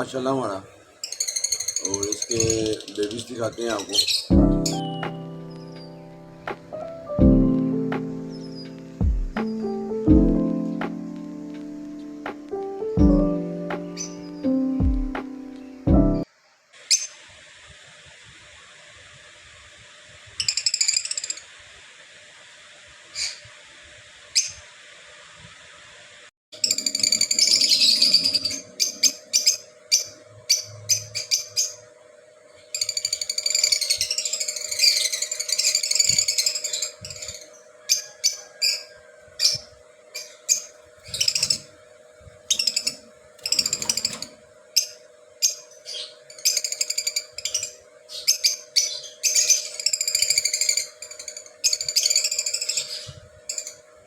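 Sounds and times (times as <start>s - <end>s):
lovebirds chattering: 0.0s - 16.3s, 26.6s - 31.9s, 32.7s - 41.7s, 42.5s - 53.8s
steady hum: 0.0s - 16.7s.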